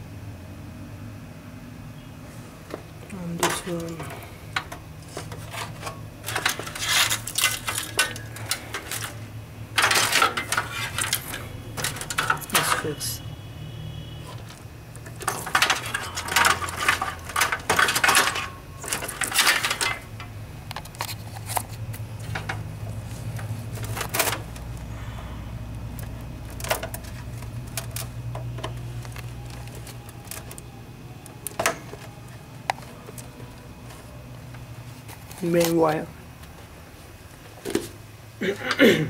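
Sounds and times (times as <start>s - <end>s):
plastic connectors clicking and rattling: 3.4s - 9.2s, 9.8s - 13.1s, 14.3s - 22.6s, 23.3s - 24.8s, 25.7s - 33.6s.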